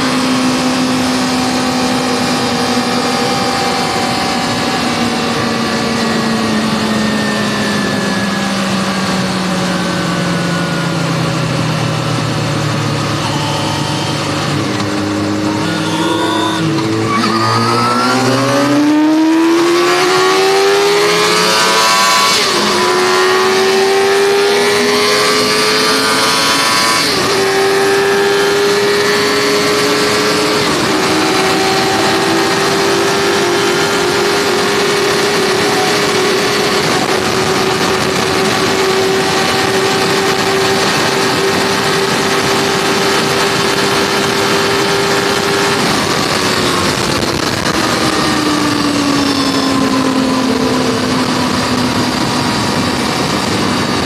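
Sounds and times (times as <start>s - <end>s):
motorcycle engine accelerating: 0.0s - 54.0s.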